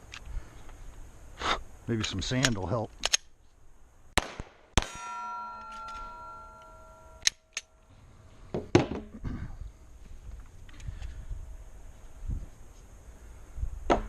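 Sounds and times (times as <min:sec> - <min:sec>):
sharp cracks: 0:04.1 - 0:07.9
steel target plate clanging: 0:04.8 - 0:07.8.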